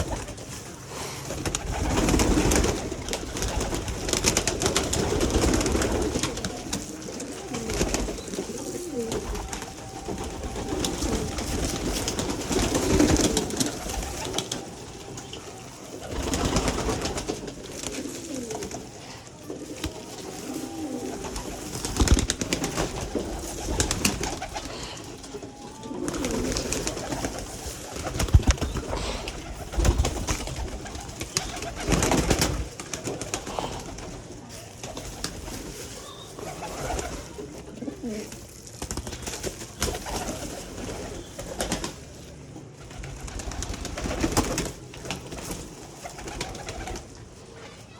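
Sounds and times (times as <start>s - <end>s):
pigeons cooing: 0.0s - 38.6s.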